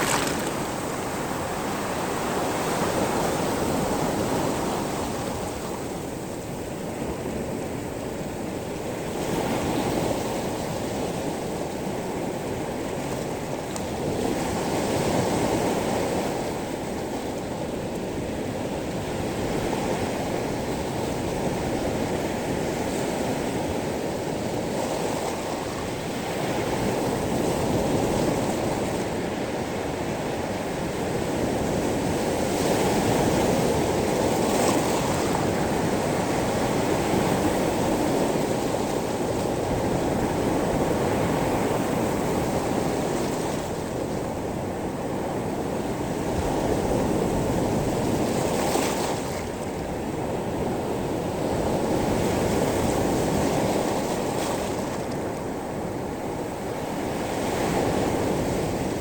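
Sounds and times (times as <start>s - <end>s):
waves washing over pebbles: 0.0s - 3.3s.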